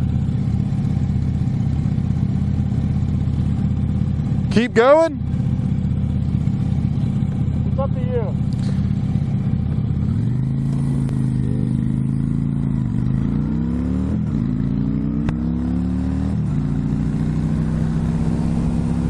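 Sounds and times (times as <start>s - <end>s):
motorcycle engine shifting gears: 5.3s - 19.0s.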